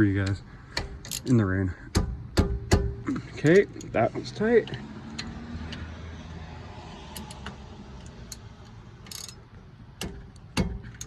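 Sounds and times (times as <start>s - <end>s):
ratchet wrench clicking: 1.0s - 1.4s, 7.1s - 9.4s
heavy metallic knock: 1.9s - 3.0s.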